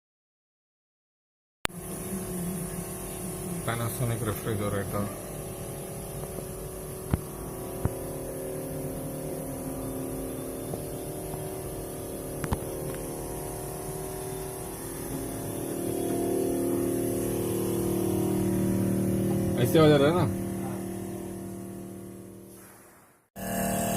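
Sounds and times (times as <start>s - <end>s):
refrigerator droning: 1.7s - 22.6s, 23.4s - 23.9s
fan ticking: 3.2s - 22.0s.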